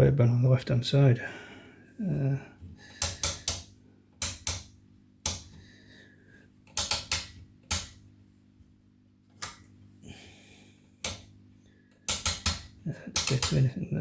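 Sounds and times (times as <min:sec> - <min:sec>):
faint low hum: 0:00.0 - 0:14.0
switches and knobs clicking: 0:02.9 - 0:05.7, 0:06.6 - 0:08.2, 0:09.2 - 0:09.8, 0:11.0 - 0:14.0.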